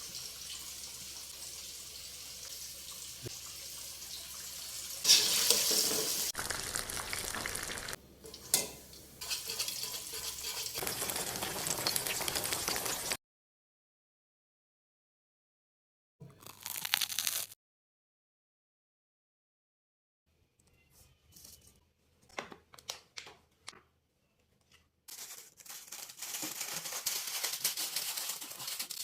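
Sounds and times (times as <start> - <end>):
chicken frying in hot oil: 0.0 - 13.2.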